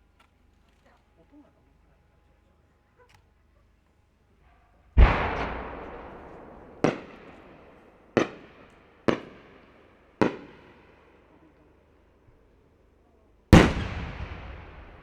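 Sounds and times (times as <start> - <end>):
firework shells bursting: 5.0 - 8.4, 13.6 - 15.0.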